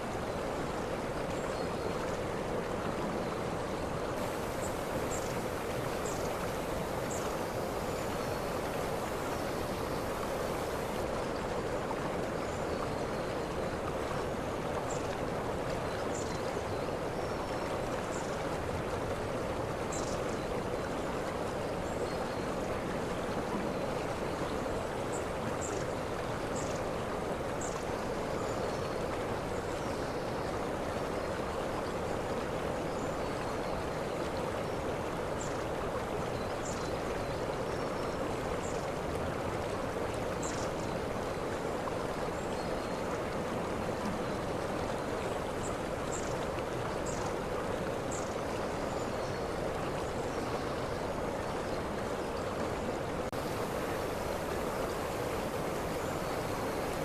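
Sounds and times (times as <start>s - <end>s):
waterfall rushing: 4.2s - 11.0s, 53.3s - 57.0s.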